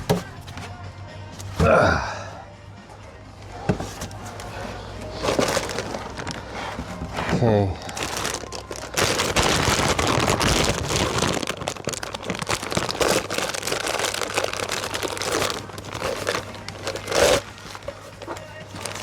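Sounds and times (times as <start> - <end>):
crinkling and rustling: 3.4 - 19.0.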